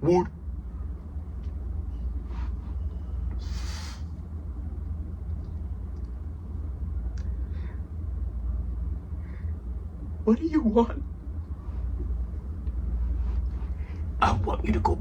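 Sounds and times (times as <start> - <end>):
low background rumble: 0.0 - 15.0
short breathy hiss: 3.4 - 4.0.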